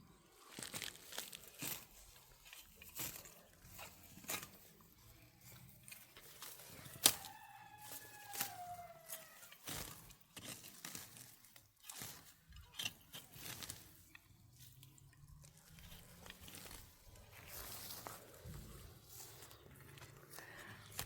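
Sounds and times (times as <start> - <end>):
crunching and crackling: 0.0 - 21.0.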